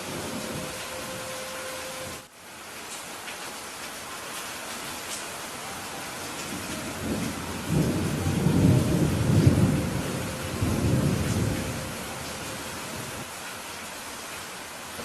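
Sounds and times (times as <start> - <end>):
heavy rain: 0.0 - 15.0
rolling thunder: 6.5 - 13.3.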